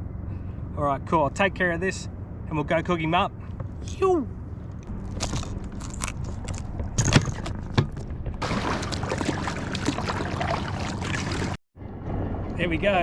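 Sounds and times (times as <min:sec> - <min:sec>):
steady low rumble: 0:00.0 - 0:13.0
gear clattering and rattling: 0:04.7 - 0:08.4.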